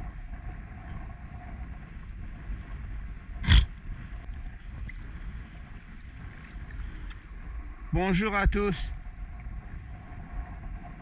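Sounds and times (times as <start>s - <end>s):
strong wind buffeting microphone: 0.0s - 11.0s.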